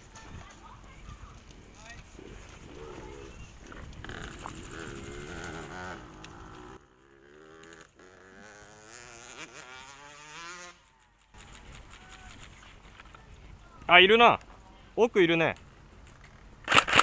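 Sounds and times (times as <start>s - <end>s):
rustling movement: 0.0s - 6.8s, 10.4s - 17.0s
motorcycle engine revving: 2.2s - 11.6s.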